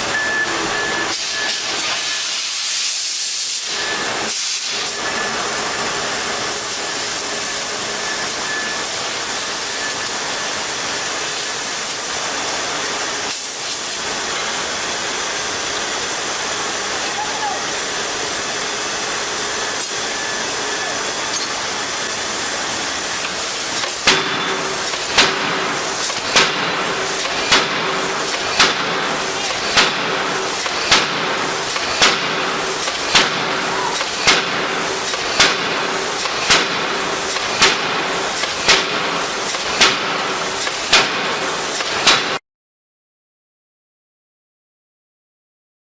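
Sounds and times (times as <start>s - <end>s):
loud machinery noise: 0.0s - 42.4s
forging hammer striking steel: 20.7s - 42.4s.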